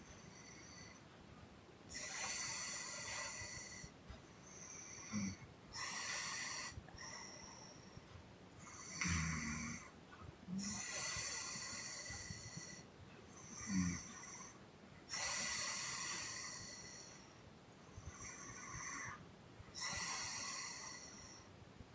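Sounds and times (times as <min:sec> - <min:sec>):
woman snoring: 0:01.9 - 0:03.9, 0:04.6 - 0:07.5, 0:08.7 - 0:09.9, 0:10.5 - 0:12.8, 0:13.4 - 0:17.2, 0:18.1 - 0:19.2, 0:19.8 - 0:21.4.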